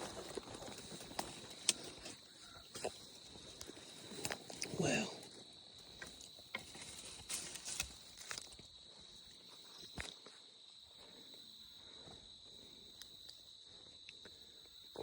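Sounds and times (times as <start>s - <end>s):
footsteps pushing through brush: 0.0s - 4.8s, 5.5s - 10.3s
insects chirring: 0.0s - 15.0s.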